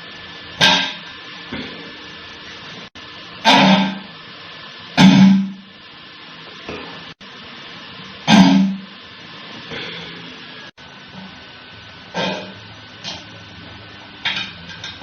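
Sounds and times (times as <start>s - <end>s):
person belching: 8.3s - 8.8s.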